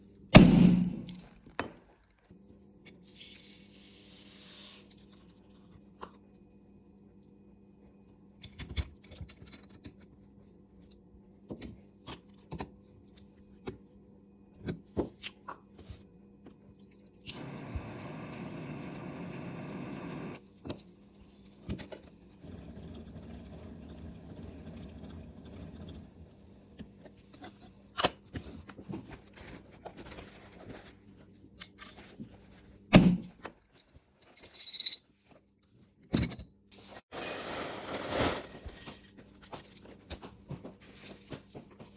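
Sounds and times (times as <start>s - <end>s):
sharp bang: 0.4s - 1.3s.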